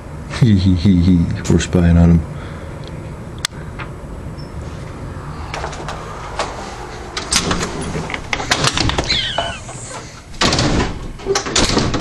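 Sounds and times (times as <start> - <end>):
short falling squeak: 8.9 - 10.2.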